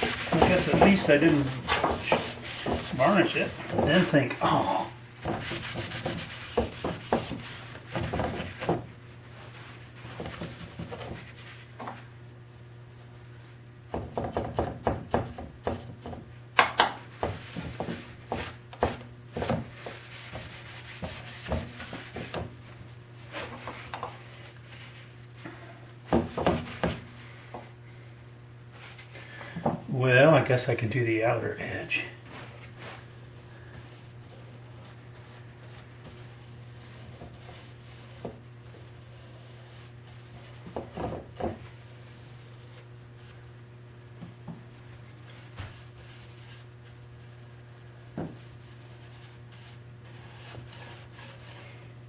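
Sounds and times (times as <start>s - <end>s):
rubbing on wooden chest: 0.0s - 11.9s, 17.1s - 22.6s, 48.2s - 52.0s.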